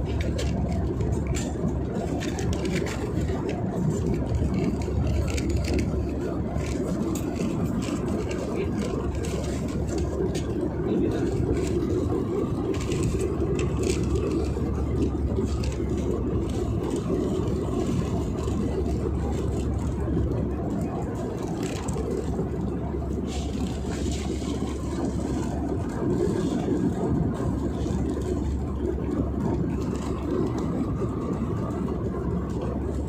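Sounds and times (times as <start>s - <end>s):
airliner engines rumbling: 0.0s - 33.0s.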